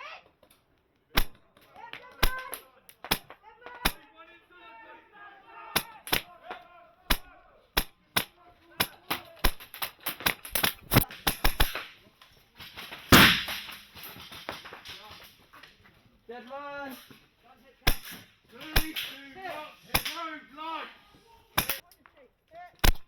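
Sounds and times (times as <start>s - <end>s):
airsoft gun shots: 1.1s - 1.4s, 2.2s - 4.0s, 7.1s - 11.9s, 13.1s - 13.8s, 17.9s - 19.2s, 21.6s - 21.8s, 22.8s - 23.0s.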